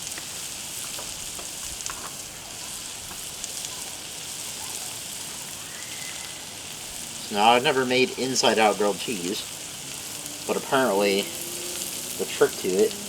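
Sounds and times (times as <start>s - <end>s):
butter sizzling on griddle: 0.0s - 13.0s.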